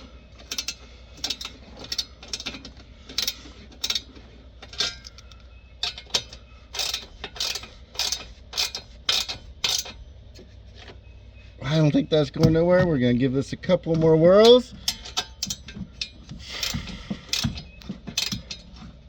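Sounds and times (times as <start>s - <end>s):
ratchet wrench clicking: 0.4s - 4.1s, 4.7s - 10.0s, 14.5s - 18.7s.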